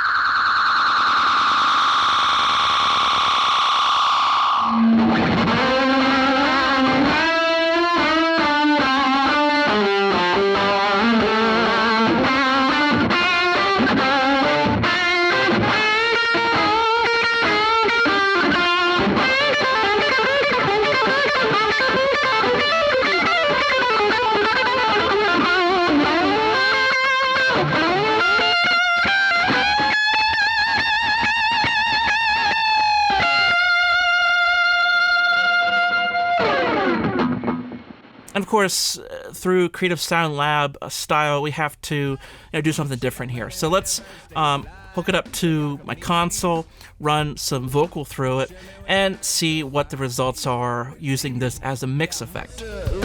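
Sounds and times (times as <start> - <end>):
electric guitar notes with echo: 4.4 - 38.3.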